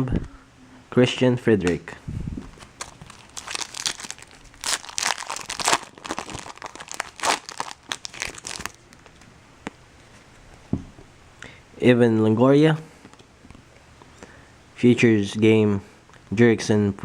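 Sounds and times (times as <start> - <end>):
foil wrapper crinkling and tearing: 2.6 - 9.2.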